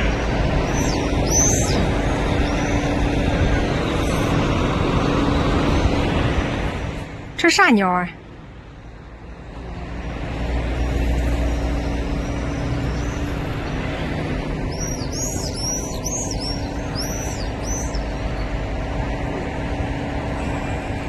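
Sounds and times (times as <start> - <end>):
small birds chirping: 0.0 - 4.3, 11.6 - 18.6
road traffic rumble: 0.0 - 21.0.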